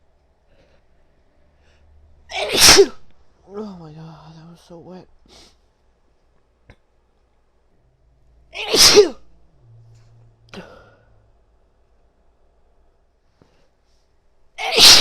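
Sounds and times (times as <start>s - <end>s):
woman sneezing: 2.3s - 3.0s, 8.6s - 9.2s, 14.6s - 15.0s.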